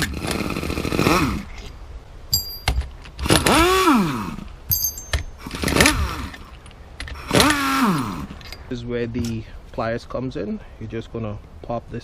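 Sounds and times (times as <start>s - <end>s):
metal tools clinking: 2.3s - 3.5s, 4.7s - 7.6s, 8.3s - 9.4s.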